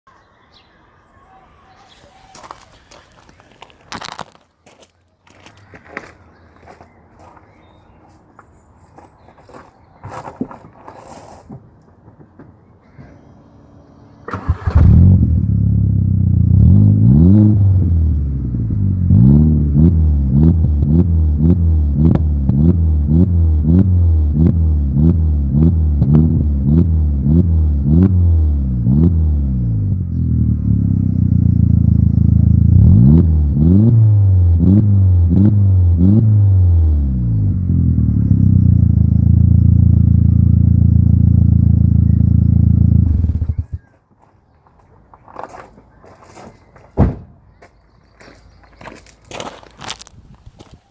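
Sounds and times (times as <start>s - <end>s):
engine starting and revving: 12.8s - 31.3s, 42.8s - 43.8s
engine throttle blips: 12.8s - 43.8s.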